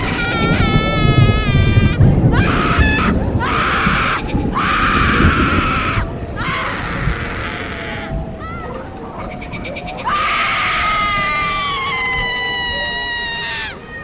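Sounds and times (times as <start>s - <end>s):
person screaming: 0.0s - 8.6s.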